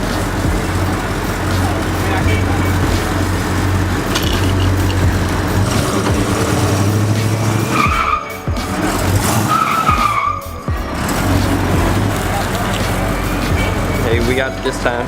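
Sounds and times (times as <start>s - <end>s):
car engine running hard: 0.0s - 15.0s
tyres skidding: 0.0s - 15.0s
short high tyre squeals: 5.6s - 15.0s.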